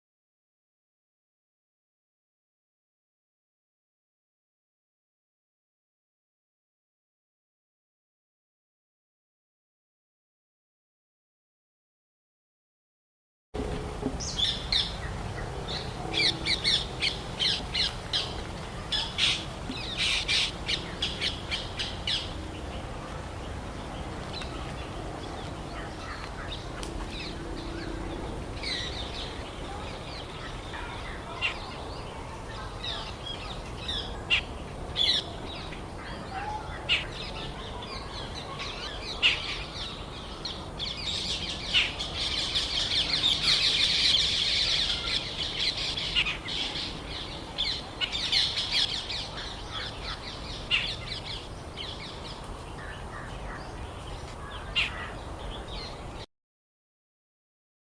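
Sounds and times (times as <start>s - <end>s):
low background noise: 13.6s - 56.3s
wild birds chirping: 14.1s - 56.3s.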